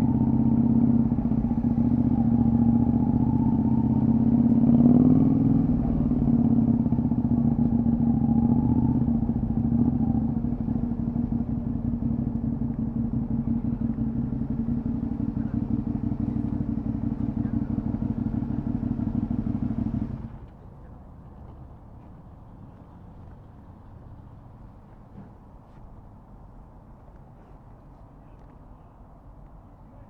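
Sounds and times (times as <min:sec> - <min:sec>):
motorcycle engine running: 0:00.0 - 0:20.4.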